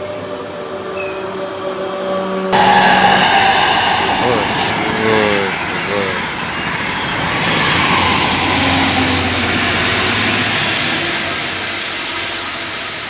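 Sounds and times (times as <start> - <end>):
train passing at speed: 2.0 - 13.0
high-pitched squeal: 2.6 - 13.0.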